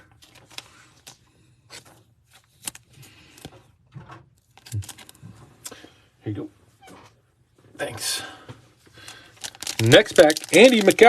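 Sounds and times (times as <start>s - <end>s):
cards and wrappers handled: 0.0s - 3.7s, 4.4s - 5.8s, 8.9s - 11.0s.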